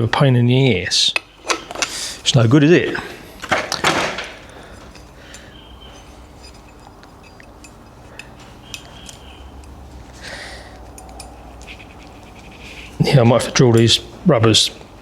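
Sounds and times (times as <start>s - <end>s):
low background hum: 0.0s - 15.0s
metal parts clicking and clinking: 2.8s - 9.8s, 10.8s - 11.9s.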